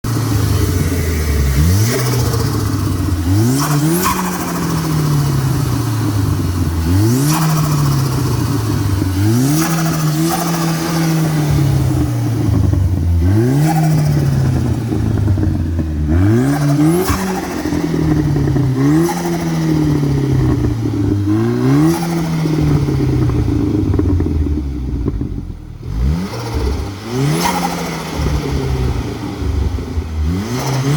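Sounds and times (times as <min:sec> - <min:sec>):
turbo car engine revving: 0:00.0 - 0:30.9.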